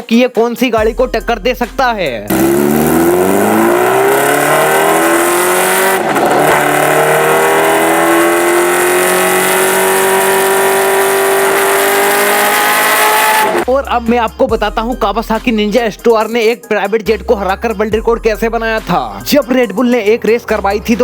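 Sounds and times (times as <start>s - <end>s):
motorcycle engine accelerating hard: 2.3s - 13.7s.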